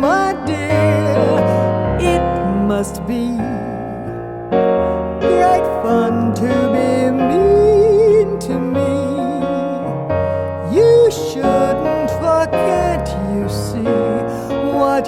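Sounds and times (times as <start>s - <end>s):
piano chords: 0.0s - 15.0s.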